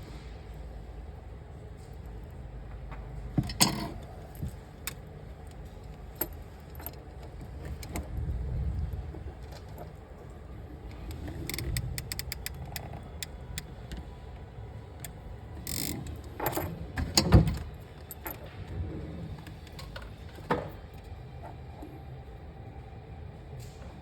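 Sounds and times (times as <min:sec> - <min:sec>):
small metallic clicks and knocks: 0:10.9 - 0:14.1, 0:15.0 - 0:18.4.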